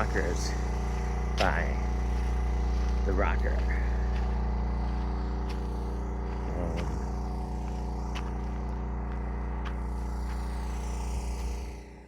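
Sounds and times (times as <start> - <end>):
portable generator engine running: 0.0 - 12.0.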